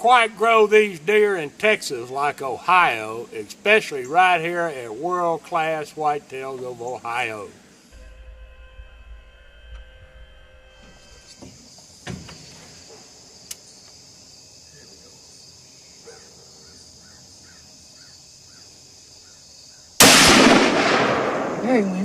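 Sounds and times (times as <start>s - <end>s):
insect buzz: 1.1s - 20.4s
rifle shot: 20.0s - 22.0s.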